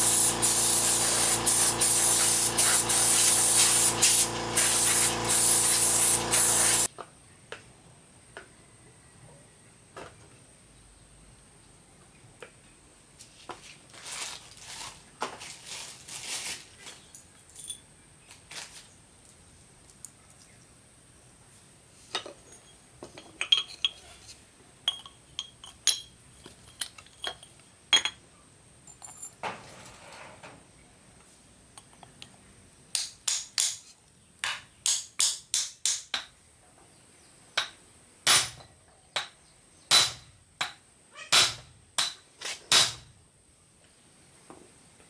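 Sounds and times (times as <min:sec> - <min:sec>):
metal tools clinking: 0:22.4 - 0:24.0, 0:24.9 - 0:28.2.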